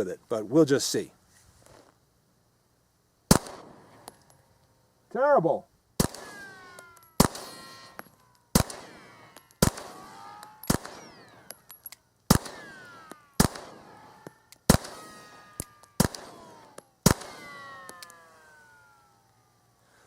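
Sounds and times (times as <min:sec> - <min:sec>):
pistol shots ringing: 0:03.3 - 0:04.3, 0:06.0 - 0:19.2.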